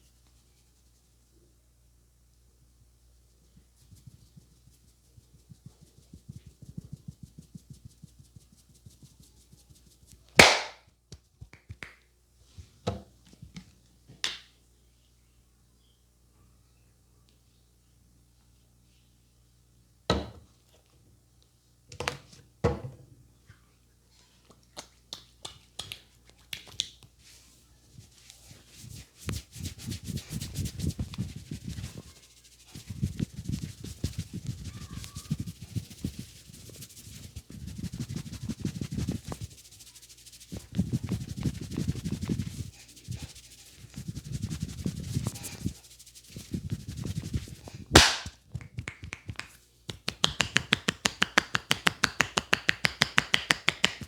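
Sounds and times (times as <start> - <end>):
hands rubbing scalp and hair: 3.8 - 10.8, 26.6 - 54.0
loud sharp crack: 10.4 - 10.8, 48.0 - 48.4.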